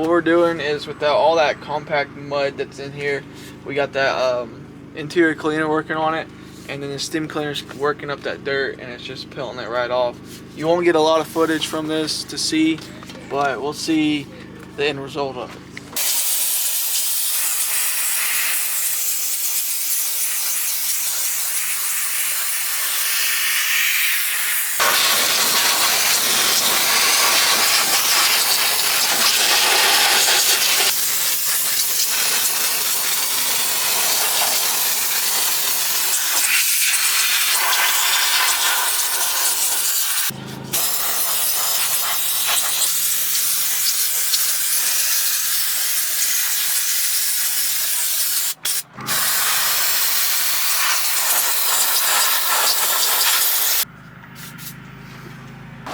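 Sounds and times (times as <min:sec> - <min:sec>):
steam cleaner hissing: 0:16.0 - 0:53.8.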